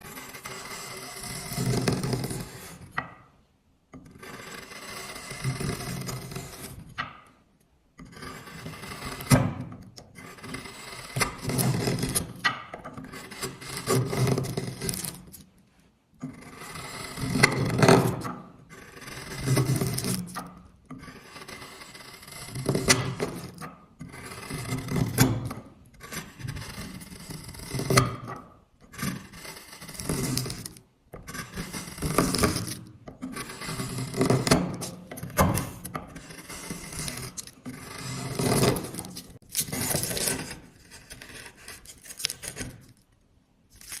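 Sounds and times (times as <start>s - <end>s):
blade shaving wood: 4.2s - 6.8s, 10.2s - 12.4s, 13.1s - 15.4s, 16.5s - 20.5s, 28.9s - 42.9s.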